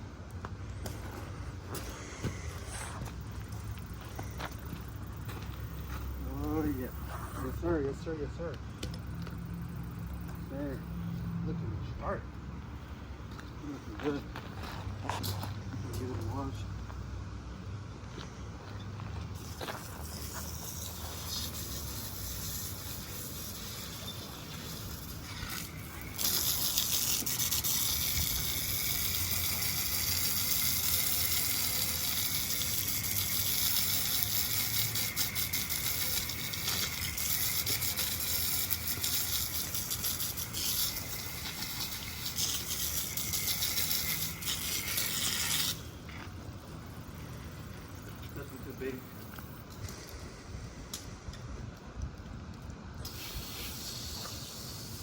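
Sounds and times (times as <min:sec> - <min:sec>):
hose spraying water: 0:19.4 - 0:46.0, 0:53.0 - 0:55.0.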